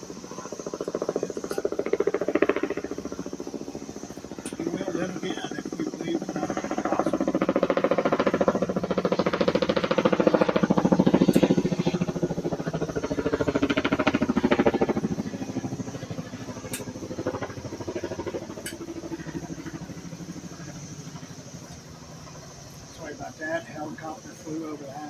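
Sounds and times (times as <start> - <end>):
helicopter rotor beating: 0.0 - 25.0.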